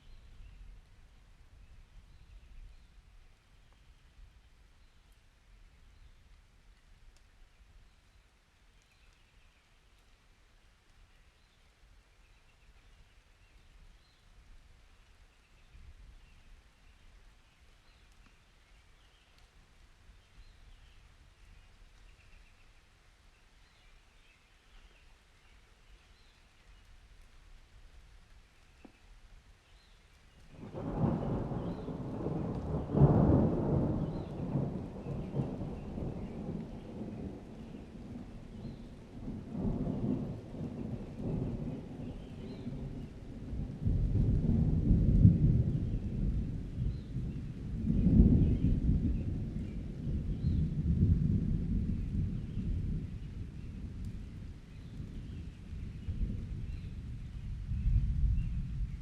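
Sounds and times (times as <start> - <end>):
steady rain: 0.0 - 59.0
rolling thunder: 30.6 - 59.0.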